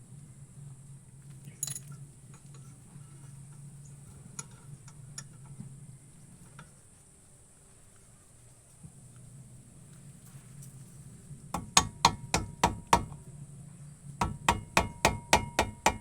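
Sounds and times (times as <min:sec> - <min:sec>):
steady low hum: 0:00.0 - 0:16.0
metallic clicks and clinks: 0:01.5 - 0:02.6.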